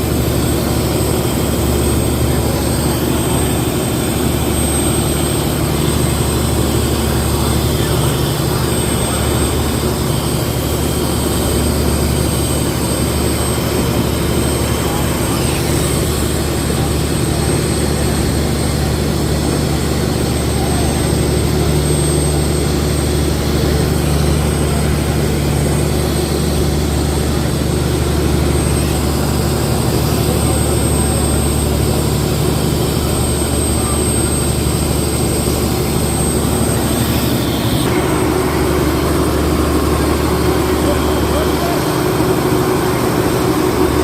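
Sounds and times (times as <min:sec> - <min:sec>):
boat engine droning: 0:00.0 - 0:44.0.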